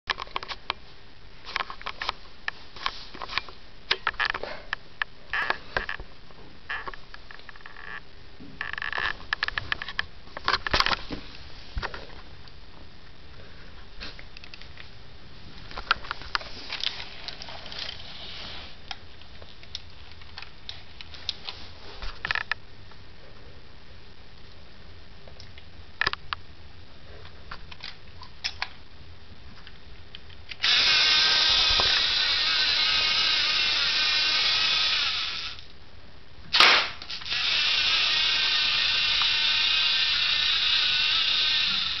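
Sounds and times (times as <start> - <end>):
soft hiss: 0.3 - 42.0
motor whirring through plastic gears: 30.6 - 35.6, 37.2 - 42.0
sharp snap of pistol mechanism: 36.6 - 37.1.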